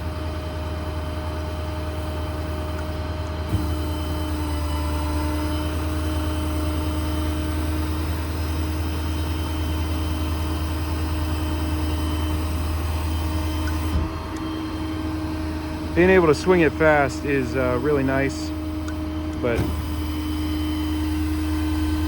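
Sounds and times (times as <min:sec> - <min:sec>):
diesel engine low hum: 0:00.0 - 0:22.0
hydraulic pump held tone: 0:01.6 - 0:22.0.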